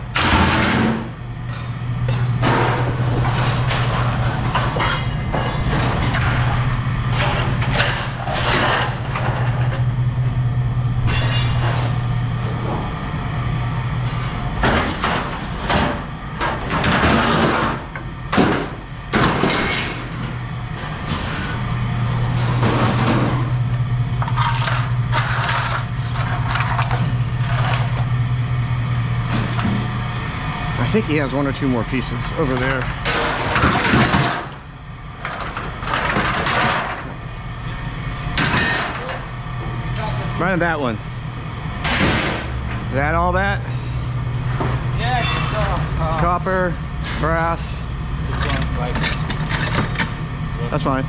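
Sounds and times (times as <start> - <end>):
mechanical hum: 0.0 - 51.0
scrap metal clanking: 24.2 - 28.0.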